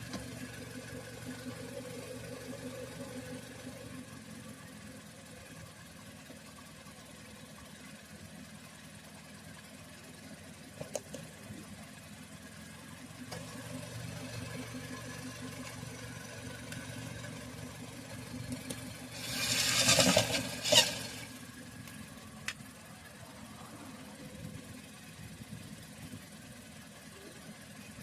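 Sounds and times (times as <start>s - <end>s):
car engine idling: 0.0s - 28.0s
scraping noise: 19.1s - 21.3s.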